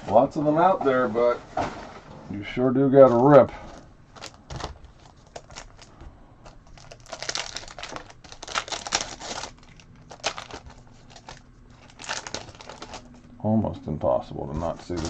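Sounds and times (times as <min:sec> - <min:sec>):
foil wrapper crinkling and tearing: 0:04.1 - 0:13.2.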